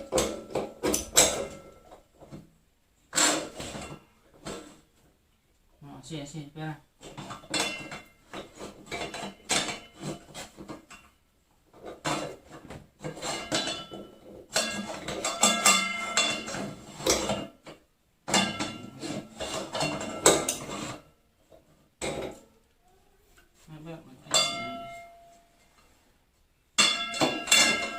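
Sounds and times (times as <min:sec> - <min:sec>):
metal tools clinking: 0:24.3 - 0:25.4, 0:26.8 - 0:27.9.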